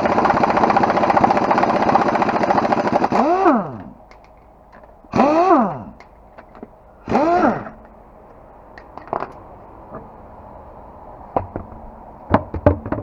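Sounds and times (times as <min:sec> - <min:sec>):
impact wrench whining: 0:00.0 - 0:04.0, 0:05.1 - 0:06.1, 0:07.0 - 0:07.9
tools clicking and knocking: 0:04.1 - 0:05.0, 0:06.0 - 0:06.8.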